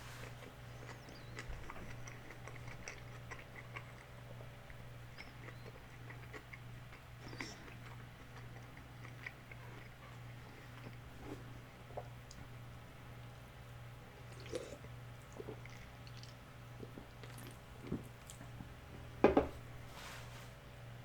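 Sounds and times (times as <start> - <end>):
person chewing: 0.2 - 12.5, 14.2 - 18.7.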